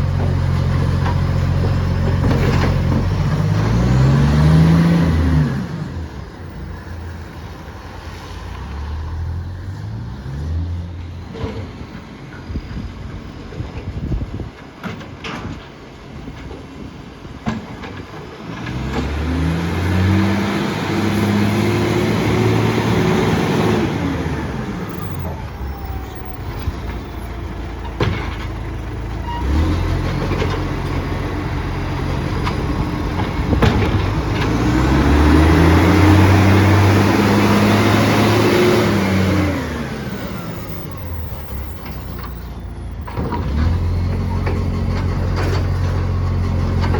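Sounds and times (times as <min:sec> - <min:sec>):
garbage truck diesel engine revving: 0:00.0 - 0:07.6, 0:18.5 - 0:46.9.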